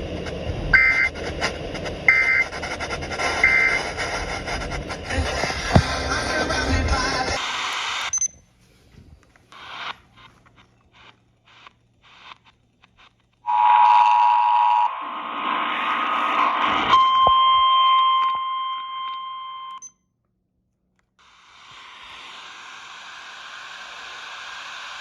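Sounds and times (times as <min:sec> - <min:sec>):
radio static hiss: 0:00.0 - 0:17.7, 0:21.2 - 0:25.0
two-tone alarm: 0:03.4 - 0:03.8, 0:13.5 - 0:15.2, 0:16.8 - 0:19.9.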